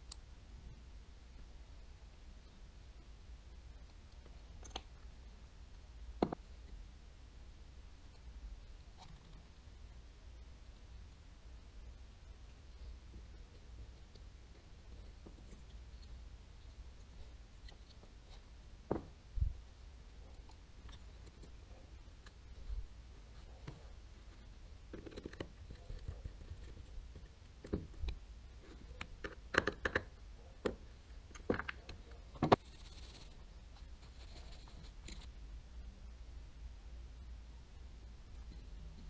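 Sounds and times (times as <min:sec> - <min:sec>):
soft hiss: 0:00.0 - 0:24.9.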